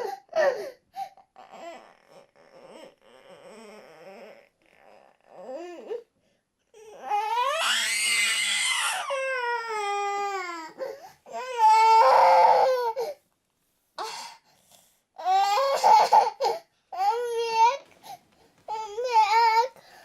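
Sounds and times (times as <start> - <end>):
small child crying: 6.9 - 13.2.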